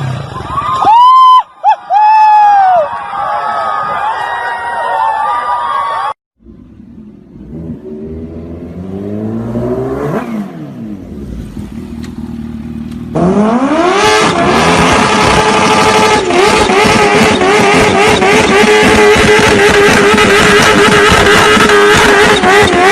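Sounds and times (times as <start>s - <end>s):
loud engine revving high: 7.3s - 11.3s, 13.1s - 22.9s.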